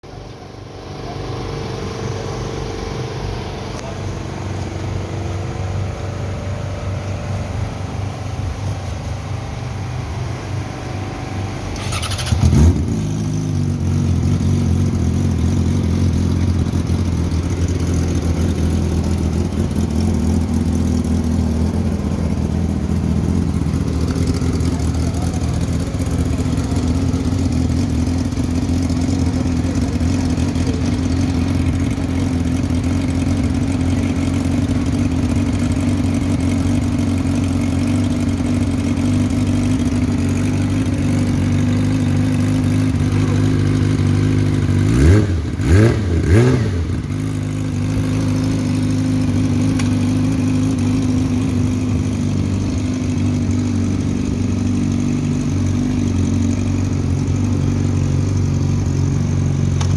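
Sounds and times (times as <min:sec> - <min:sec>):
engine throttle blips: 0:00.0 - 0:59.9
motorcycle engine idling: 0:00.0 - 0:59.9.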